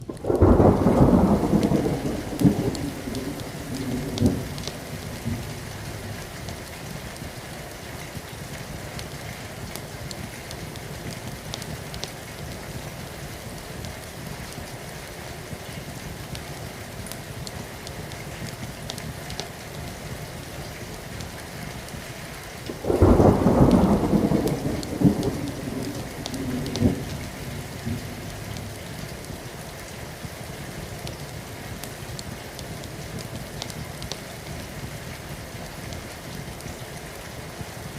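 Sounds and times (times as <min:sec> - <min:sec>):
thunder rumble: 0:00.0 - 0:07.3, 0:22.7 - 0:29.4
steady rain: 0:00.0 - 0:37.9.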